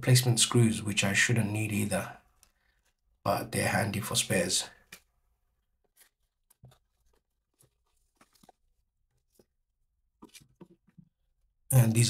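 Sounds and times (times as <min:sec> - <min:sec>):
plastic parts and packaging rustling: 0:02.2 - 0:03.2, 0:04.8 - 0:11.5.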